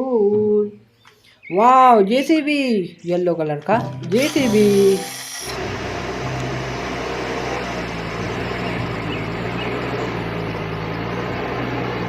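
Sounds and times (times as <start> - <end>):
engine running with low hum: 5.4 - 12.0.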